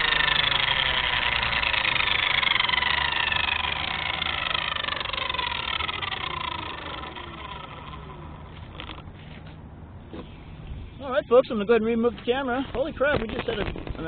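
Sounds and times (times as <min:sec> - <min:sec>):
helicopter rotor spinning down: 0:00.0 - 0:09.1, 0:12.6 - 0:14.0
electric helicopter motor whine: 0:00.0 - 0:09.4, 0:12.7 - 0:14.0.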